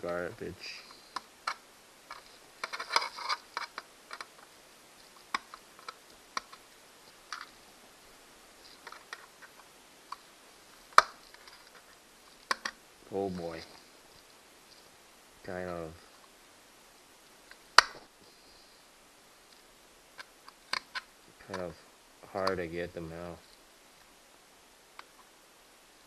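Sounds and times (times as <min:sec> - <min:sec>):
hand tool clicking and scratching: 0:00.8 - 0:04.4.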